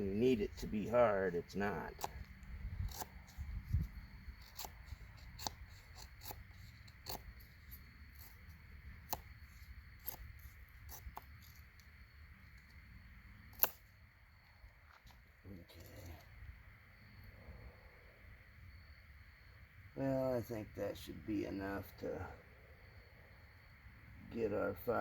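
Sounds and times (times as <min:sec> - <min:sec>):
knife scraping soft wood: 0:01.8 - 0:11.7.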